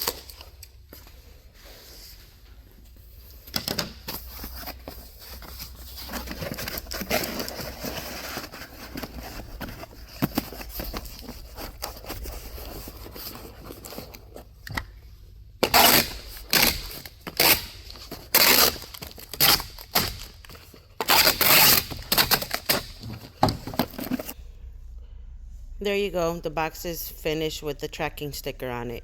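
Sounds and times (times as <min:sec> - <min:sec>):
packing being rustled: 0:03.3 - 0:14.8, 0:15.6 - 0:24.4
packing tape ripping off roll: 0:15.6 - 0:24.4.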